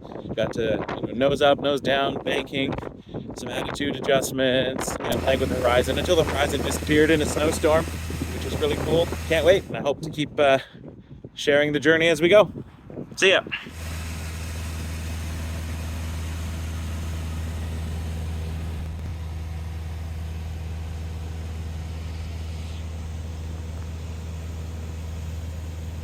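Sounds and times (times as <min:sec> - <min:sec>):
engine drone with hiss: 0:05.1 - 0:09.7, 0:13.7 - 0:26.0.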